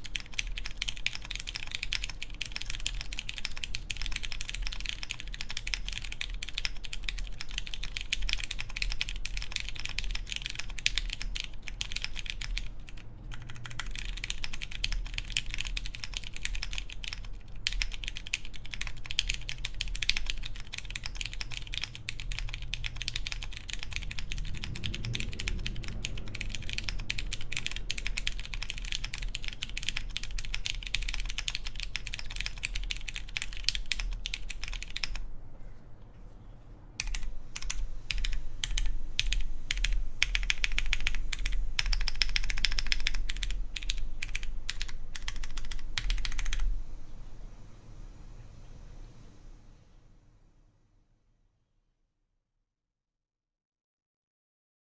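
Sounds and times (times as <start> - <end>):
mechanical keyboard typing: 0.0 - 35.3, 37.0 - 46.7.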